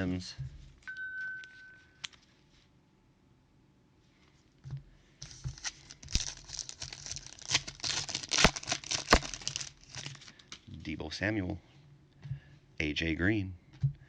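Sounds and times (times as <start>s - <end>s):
card wrapper crinkling: 5.2s - 10.7s.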